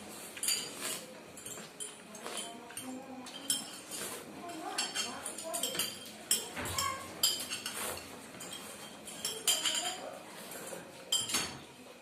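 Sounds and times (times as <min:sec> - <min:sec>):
cutlery clinking on plates: 0:00.3 - 0:11.7.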